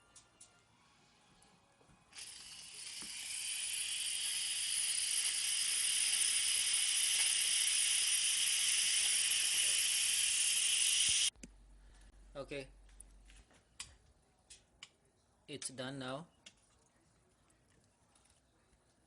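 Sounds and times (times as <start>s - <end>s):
steam hissing from valve: 2.2s - 11.3s.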